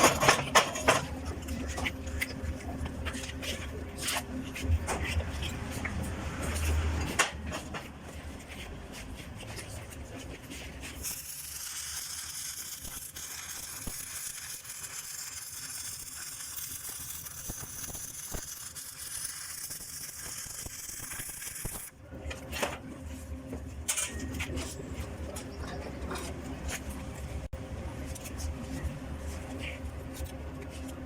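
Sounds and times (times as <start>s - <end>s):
welding arc crackling: 11.0s - 21.9s.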